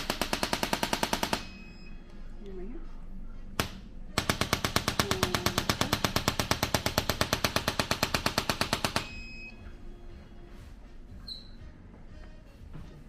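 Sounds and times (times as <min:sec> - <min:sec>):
sharp clicking impulses: 0:03.6 - 0:09.2.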